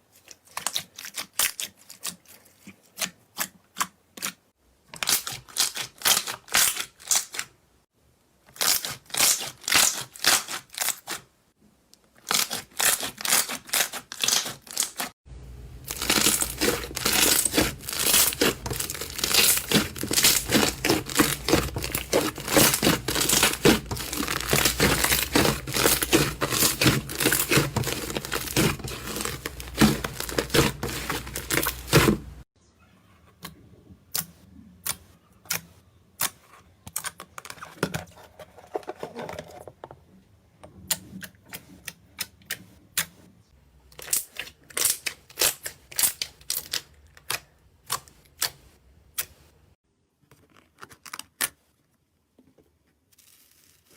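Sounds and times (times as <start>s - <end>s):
slime clicking and crackling: 12.2s - 15.1s, 15.9s - 32.4s.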